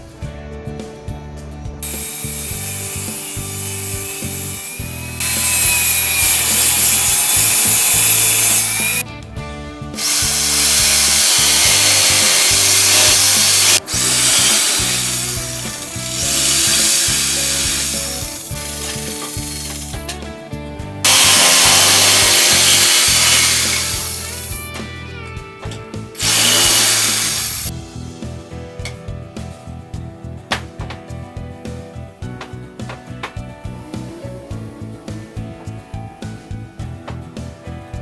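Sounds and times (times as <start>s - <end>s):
background music: 0.0s - 38.0s
power tool working wood: 1.8s - 9.0s, 10.0s - 20.4s, 21.0s - 24.9s, 26.1s - 27.7s.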